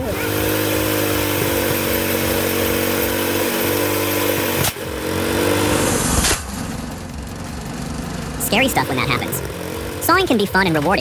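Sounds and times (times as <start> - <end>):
chainsaw engine running: 0.0 - 11.0.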